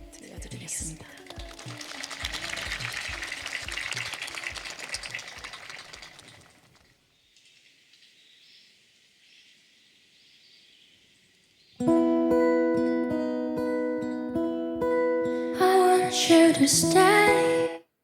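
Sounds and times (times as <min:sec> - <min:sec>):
audience applauding: 0:00.5 - 0:06.8
acoustic guitar: 0:11.8 - 0:17.8.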